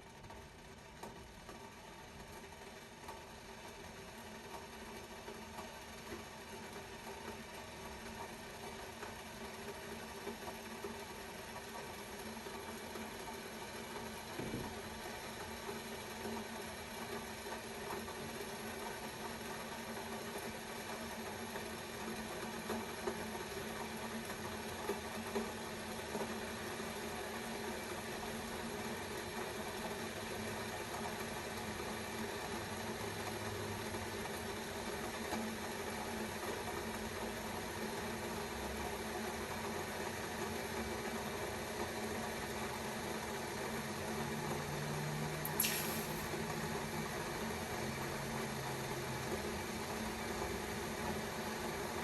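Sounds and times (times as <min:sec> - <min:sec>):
kettle heating water hiss: 0:00.0 - 0:52.0
small pops in kettle: 0:45.5 - 0:46.4.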